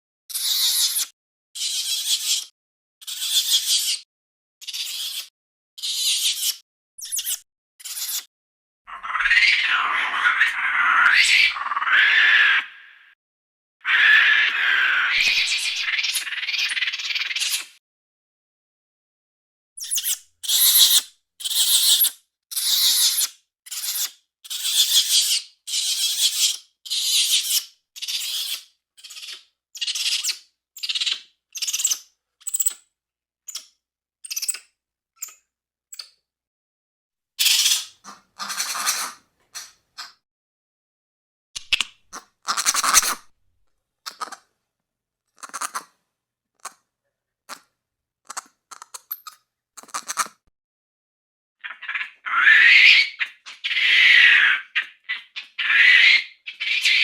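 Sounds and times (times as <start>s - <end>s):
creature chirps and screeches: 0.3s - 4.0s, 8.9s - 13.2s, 13.8s - 17.8s, 19.8s - 31.9s, 41.6s - 43.3s, 51.6s - 57.0s.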